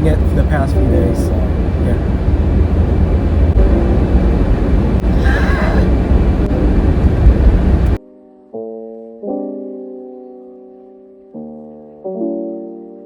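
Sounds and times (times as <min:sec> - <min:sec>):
road and engine rumble in car: 0:00.0 - 0:08.0
piano music: 0:00.0 - 0:13.0.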